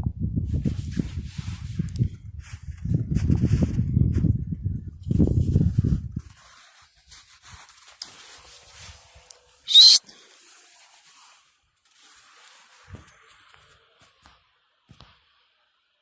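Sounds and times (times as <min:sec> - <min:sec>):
dog whining: 0:09.7 - 0:10.0.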